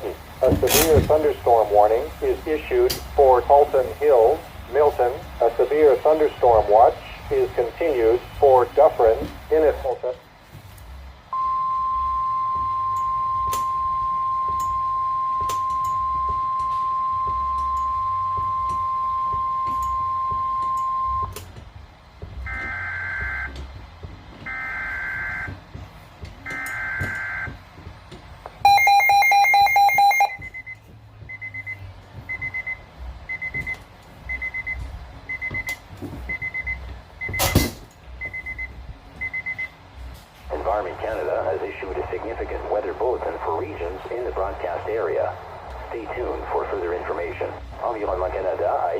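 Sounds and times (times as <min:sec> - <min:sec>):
steady alarm tone: 0:11.3 - 0:21.4, 0:22.4 - 0:23.6, 0:24.4 - 0:25.6, 0:26.4 - 0:27.6, 0:28.6 - 0:35.7
short high beeps: 0:11.4 - 0:21.4, 0:28.6 - 0:33.7
digital data tones: 0:28.6 - 0:30.8.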